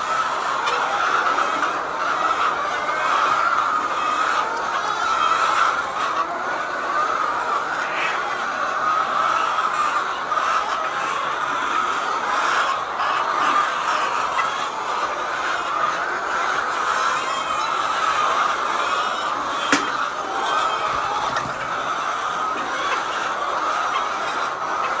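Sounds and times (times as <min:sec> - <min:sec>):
hens clucking: 0:00.4 - 0:25.0
sharp click: 0:19.5 - 0:20.2.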